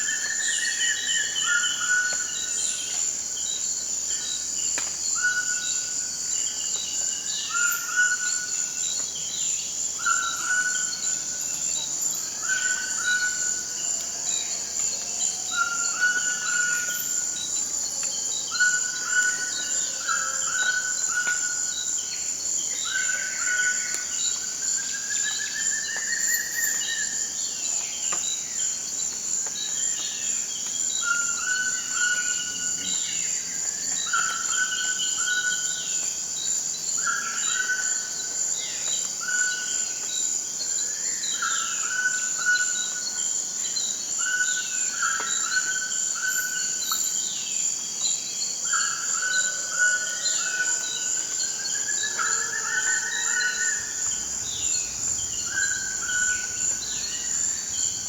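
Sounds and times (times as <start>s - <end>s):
high insect drone: 0.0s - 58.0s
birds calling: 52.0s - 58.0s.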